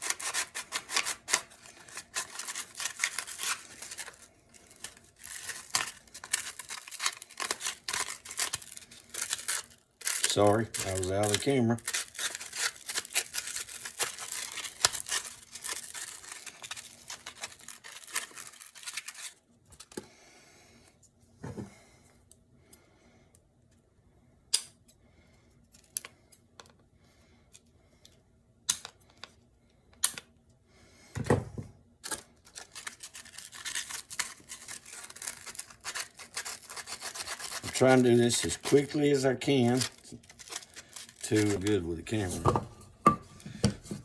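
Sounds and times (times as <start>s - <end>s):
sandpaper rubbing: 34.8s - 39.0s.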